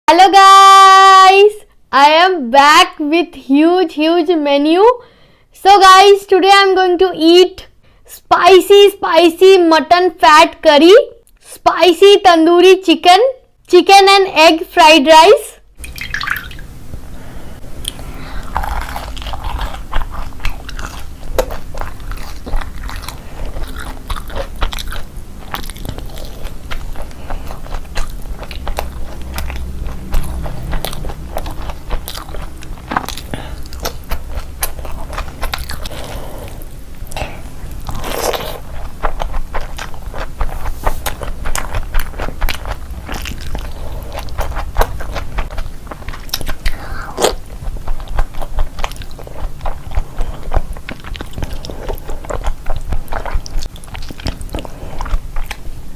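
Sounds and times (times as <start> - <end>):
low steady hum: 0.1 - 55.9
chewing and smacking: 17.8 - 55.7
food crunching: 17.8 - 55.7.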